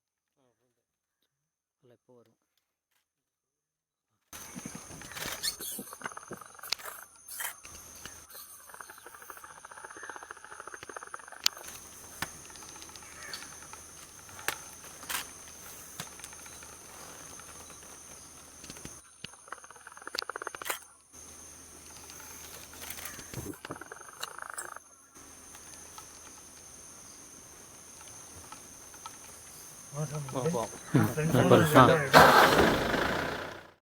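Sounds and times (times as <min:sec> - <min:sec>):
sharp insect clicks: 0:04.4 - 0:30.9
high-pitched insect drones: 0:04.4 - 0:33.5
fast rasping insect buzz: 0:26.4 - 0:33.7.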